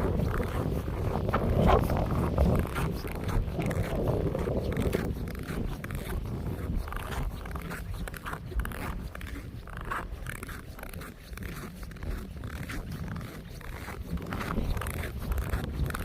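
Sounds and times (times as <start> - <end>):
crunching and scraping sounds: 0.0 - 16.0
wind rumbling on microphone: 0.0 - 16.0.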